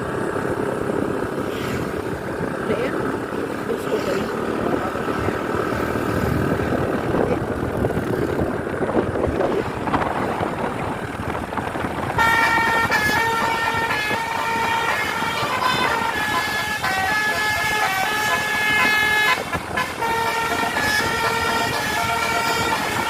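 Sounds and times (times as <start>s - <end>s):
bus engine and road noise: 0.0s - 23.0s
multi-tone musical bus horn: 11.9s - 23.0s.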